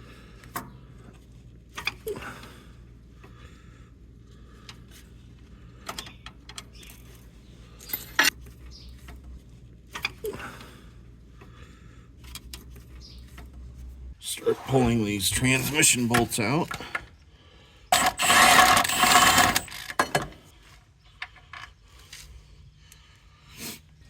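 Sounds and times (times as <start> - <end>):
metal hand tools clanking: 18.0 - 20.3.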